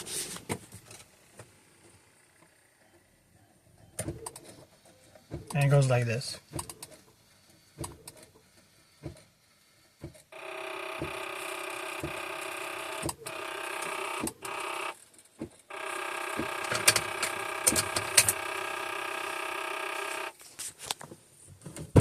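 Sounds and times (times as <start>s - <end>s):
starter motor cranking engine: 10.3s - 20.4s
clicks: 16.4s - 18.5s.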